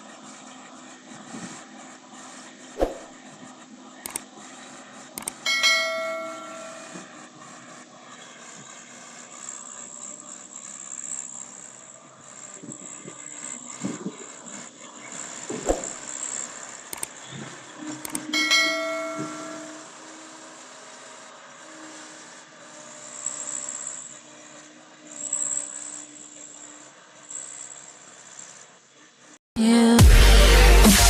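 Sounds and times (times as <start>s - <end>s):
loud ringing metallic clangs: 5.5s - 7.1s, 18.4s - 19.8s.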